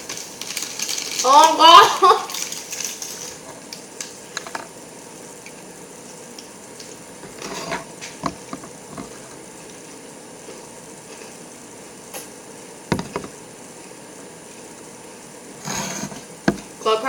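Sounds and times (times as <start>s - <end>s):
chewing cracker crunches: 0.0s - 4.2s.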